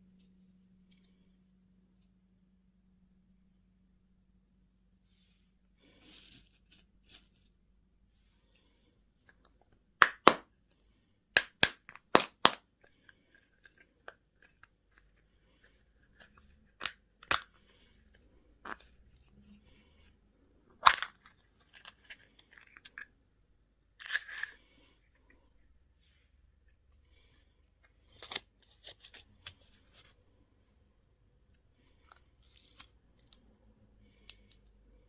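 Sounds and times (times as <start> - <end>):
plastic packaging crinkling tear: 32.0 - 33.4.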